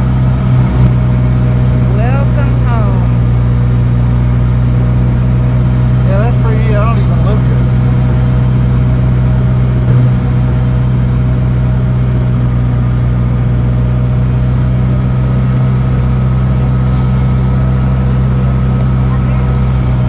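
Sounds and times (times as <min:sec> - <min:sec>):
car engine droning in water: 0:00.0 - 0:20.0.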